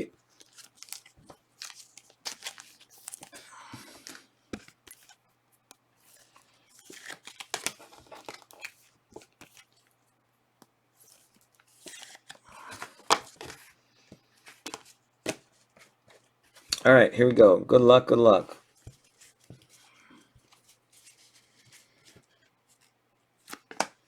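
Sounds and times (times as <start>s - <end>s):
packaging tearing and crinkling: 0.4s - 3.4s, 6.7s - 9.8s.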